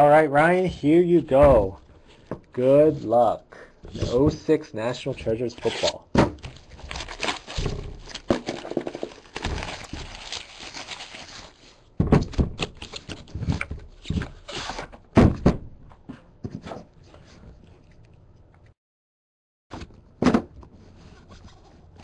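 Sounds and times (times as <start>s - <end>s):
wrapping rustling and tearing: 5.6s - 11.9s
box knocks and thunks: 6.1s - 6.6s, 12.0s - 12.7s, 15.1s - 15.8s, 20.2s - 20.6s.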